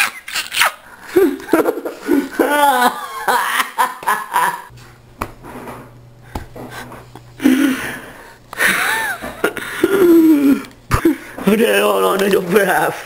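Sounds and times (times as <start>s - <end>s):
man wheezing laughter: 1.0s - 4.7s, 8.6s - 11.2s
heavy breathing: 6.2s - 8.8s.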